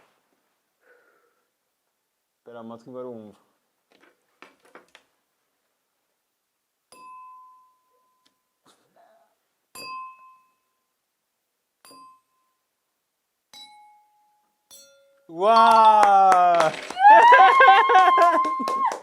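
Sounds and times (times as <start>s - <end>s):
water glasses ringing: 6.9s - 8.2s, 13.5s - 16.2s.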